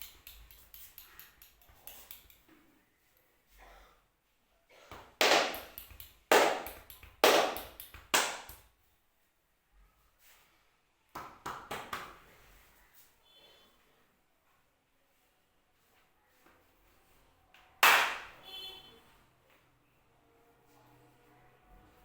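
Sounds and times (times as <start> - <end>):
hands slapping skin: 0.0 - 2.4, 4.9 - 8.7, 11.2 - 12.2, 17.8 - 18.3.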